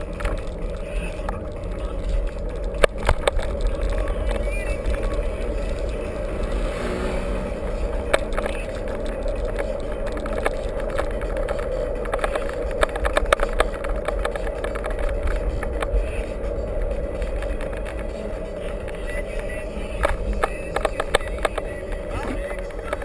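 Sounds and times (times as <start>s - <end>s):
bike rattling over rough ground: 0.0s - 23.0s.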